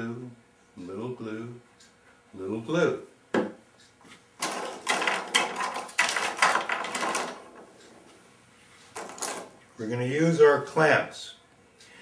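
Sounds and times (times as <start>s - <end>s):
clamps clicking and rattling: 4.4s - 8.0s, 8.9s - 9.6s.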